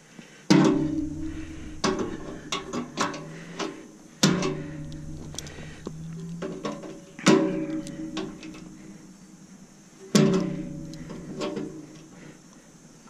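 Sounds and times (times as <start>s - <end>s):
strummed guitar chords: 0.6s - 9.1s.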